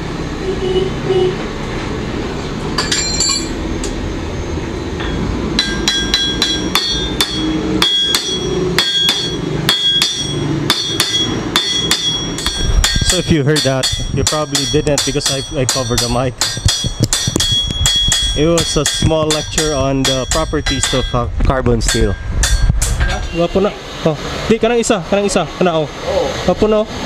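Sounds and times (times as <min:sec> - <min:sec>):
hammer striking metal on anvil: 0:02.8 - 0:03.6, 0:05.0 - 0:23.4.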